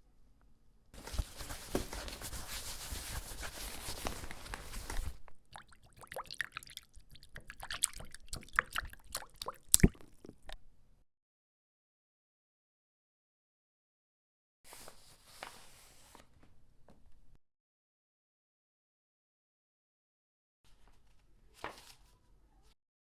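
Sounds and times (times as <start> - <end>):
clicks and drips: 4.9 - 10.6.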